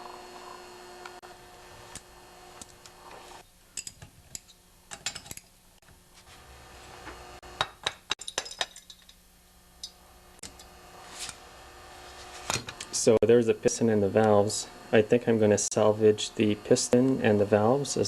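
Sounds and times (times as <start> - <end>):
metal tools and bolts clinking: 3.8 - 5.5.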